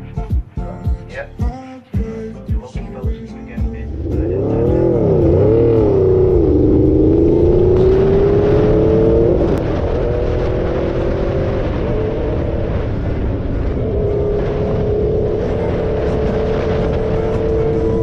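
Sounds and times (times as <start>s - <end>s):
constant low rush: 3.0s - 18.0s
motorcycle engine accelerating: 3.6s - 18.0s.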